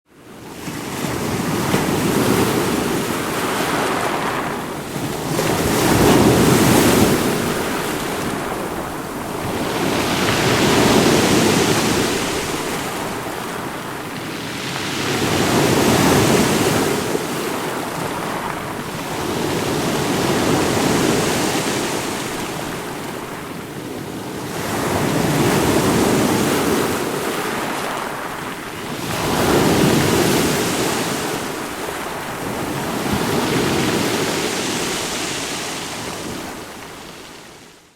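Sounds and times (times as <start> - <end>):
ocean waves breaking over rocks: 0.3 - 37.9.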